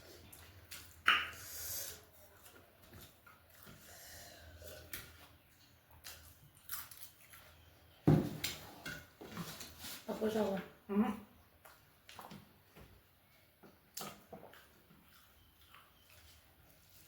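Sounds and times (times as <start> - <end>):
person chewing: 0.0 - 8.0, 13.9 - 17.0.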